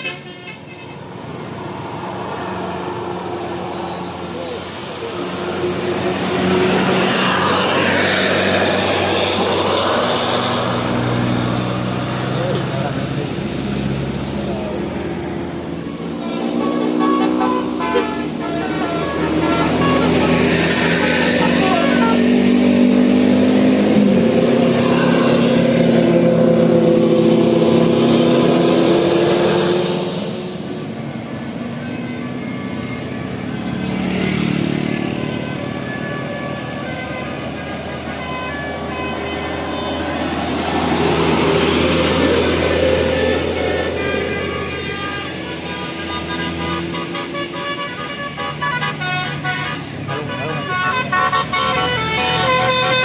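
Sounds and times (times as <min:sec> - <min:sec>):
bus horn chord: 0:00.0 - 0:01.0, 0:16.2 - 0:22.2, 0:43.2 - 0:53.0
bus driving past: 0:00.0 - 0:53.0.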